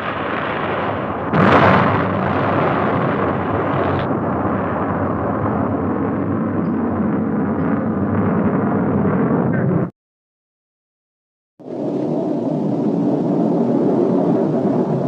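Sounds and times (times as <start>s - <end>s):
rocket explosion blast: 0.0s - 9.9s
steady rumble: 0.0s - 9.9s, 11.6s - 15.0s.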